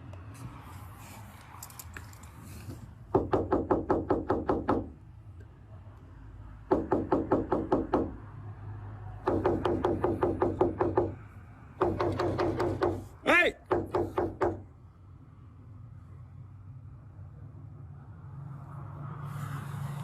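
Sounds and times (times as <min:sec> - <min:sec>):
rapid knocking: 0:06.7 - 0:08.2, 0:09.2 - 0:11.2, 0:11.8 - 0:13.0, 0:13.7 - 0:14.6.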